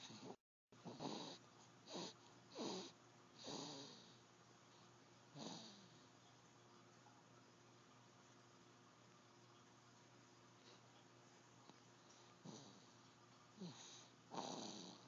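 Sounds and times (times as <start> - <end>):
squeaky snoring: 0.0 - 4.1, 13.6 - 15.0.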